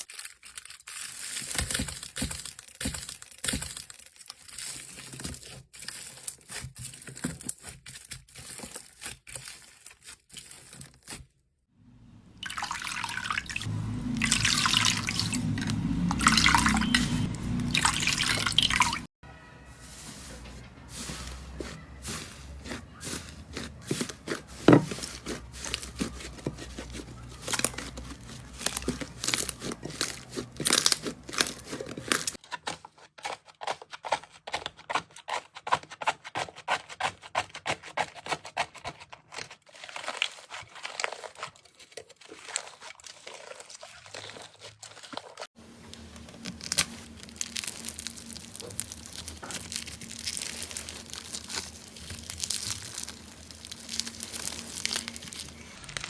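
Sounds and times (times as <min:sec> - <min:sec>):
slime clicking and popping: 0:46.6 - 0:56.0.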